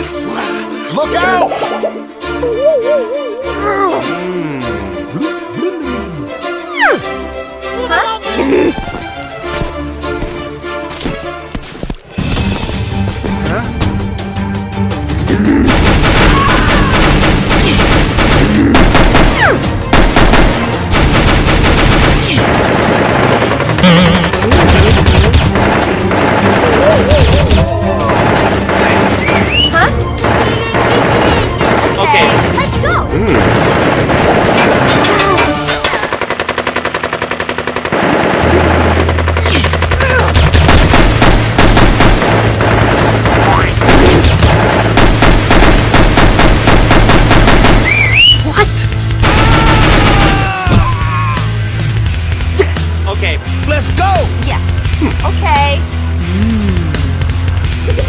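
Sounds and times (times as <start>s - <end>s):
background music: 0.0s - 58.0s
machine gun fire: 15.7s - 32.6s, 33.3s - 35.1s, 35.8s - 48.2s, 49.2s - 50.5s.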